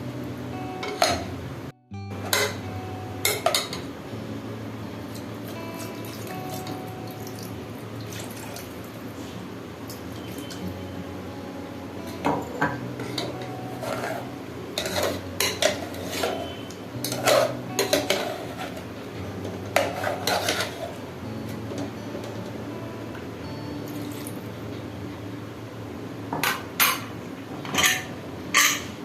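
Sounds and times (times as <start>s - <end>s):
metal spoon scraping cooking pot: 13.0s - 18.8s, 19.8s - 20.9s.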